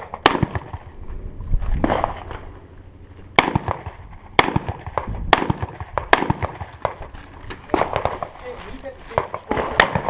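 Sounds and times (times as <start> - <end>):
rifle shots with echo: 0.0 - 1.0, 3.3 - 7.1, 7.7 - 10.0.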